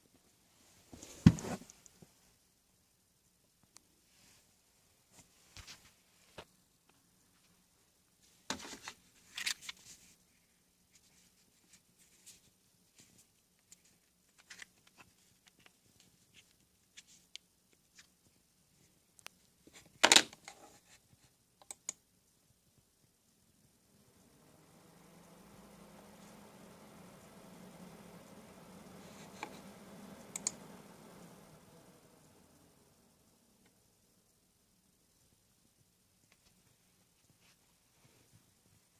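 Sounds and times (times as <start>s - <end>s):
computer parts clicking and rustling: 8.5s - 10.0s, 19.8s - 20.8s.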